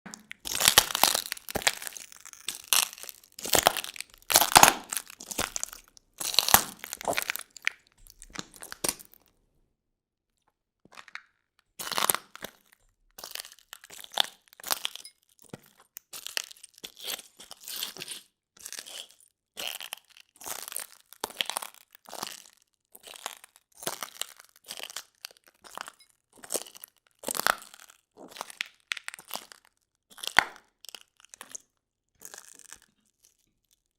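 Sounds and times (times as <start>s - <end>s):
footsteps crunching on broken glass: 0.1s - 9.3s.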